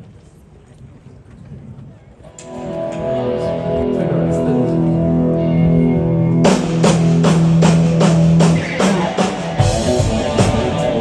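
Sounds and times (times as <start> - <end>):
bass guitar notes: 2.3 - 11.0
electric guitar notes: 2.3 - 11.0
drum kit steady beat: 6.4 - 11.0.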